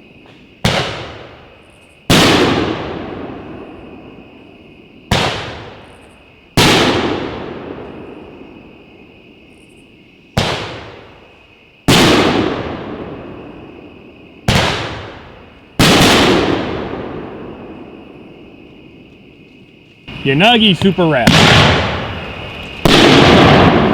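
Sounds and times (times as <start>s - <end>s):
firework launch thump: 20.8s - 23.9s
firework shell break boom: 20.8s - 23.9s.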